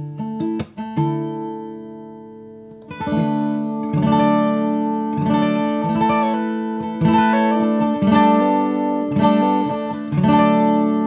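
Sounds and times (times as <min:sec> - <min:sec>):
acoustic guitar chords ringing: 0:00.0 - 0:11.0.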